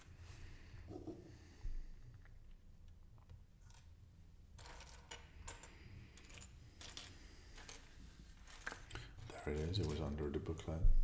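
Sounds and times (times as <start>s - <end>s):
plastic pieces clicking and rustling: 4.6s - 10.8s.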